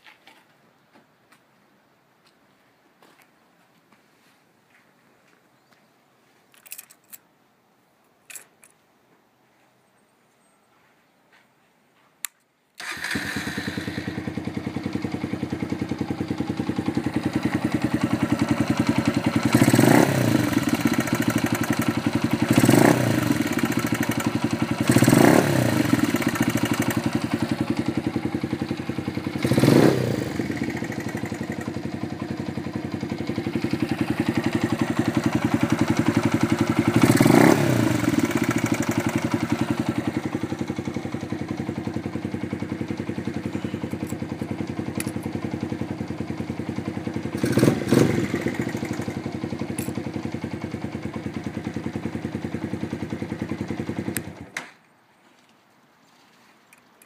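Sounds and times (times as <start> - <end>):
motorcycle engine revving: 12.8 - 54.5
motorcycle engine starting and idling: 12.8 - 54.9.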